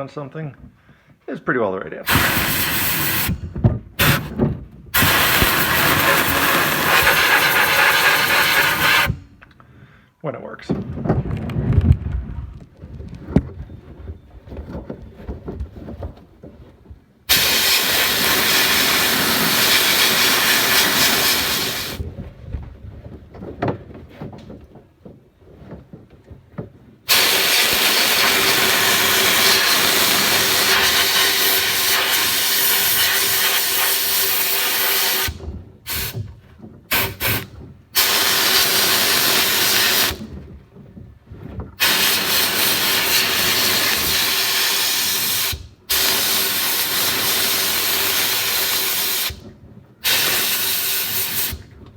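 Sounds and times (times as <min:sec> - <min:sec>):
sandblaster hissing: 0:02.0 - 0:04.4, 0:05.0 - 0:09.2, 0:17.3 - 0:22.0, 0:27.1 - 0:36.2, 0:36.9 - 0:40.3, 0:41.8 - 0:49.4, 0:50.0 - 0:51.6.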